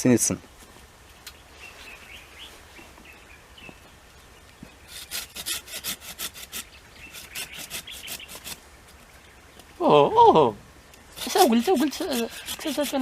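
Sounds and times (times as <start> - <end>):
hand saw cutting wood: 4.9 - 8.6, 11.1 - 13.0.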